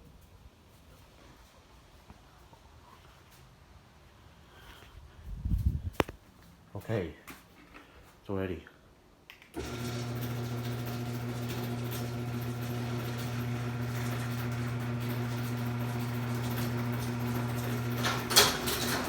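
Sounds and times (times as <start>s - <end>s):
garage door opener click: 9.5s - 19.0s
garage door opener motor humming: 9.6s - 19.0s.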